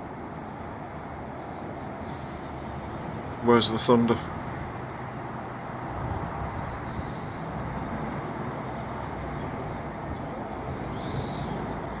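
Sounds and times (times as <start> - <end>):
distant traffic hum: 0.0 - 12.0.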